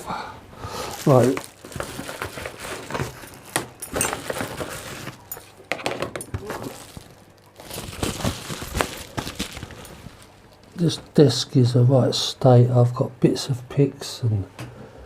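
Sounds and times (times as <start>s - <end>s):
paper and packaging rustling: 0.9s - 11.0s.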